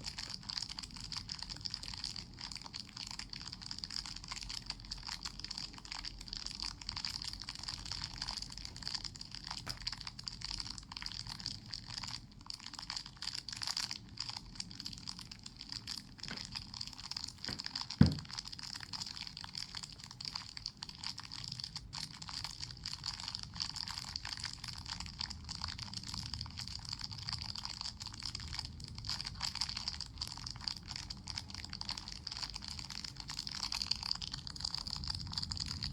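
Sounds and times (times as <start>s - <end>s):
loud dull thump: 17.5s - 18.4s.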